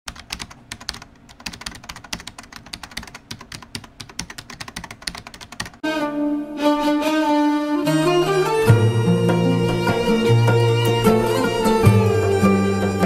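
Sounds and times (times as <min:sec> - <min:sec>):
computer keyboard typing: 0:00.1 - 0:05.8
music with bowed strings: 0:05.8 - 0:13.0.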